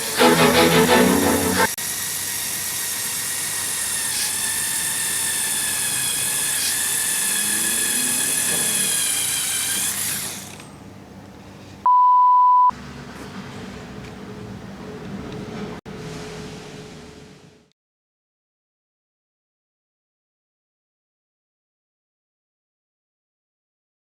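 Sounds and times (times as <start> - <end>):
small electric motor whining: 1.6 - 10.7
loud pure beep: 11.9 - 12.7.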